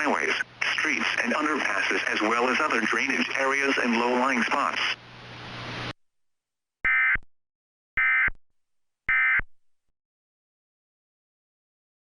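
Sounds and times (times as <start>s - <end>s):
two-tone digital data screech: 6.9s - 7.2s, 8.0s - 8.3s, 9.1s - 9.4s.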